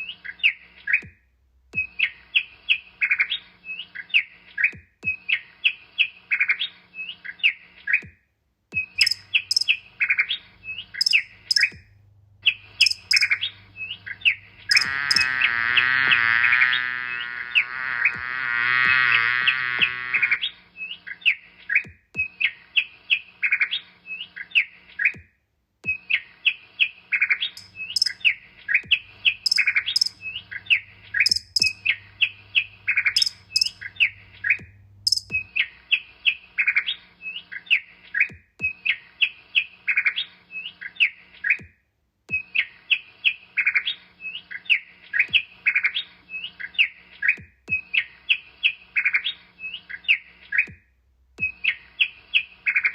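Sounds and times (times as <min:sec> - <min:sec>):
small songbird chirping: 0:08.8 - 0:15.5, 0:27.2 - 0:39.4.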